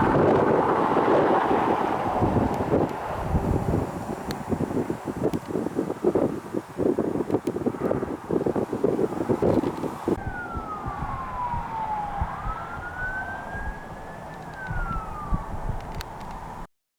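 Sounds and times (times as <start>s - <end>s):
emergency vehicle siren wailing: 0.0s - 16.7s
wind buffeting microphone: 0.0s - 16.7s.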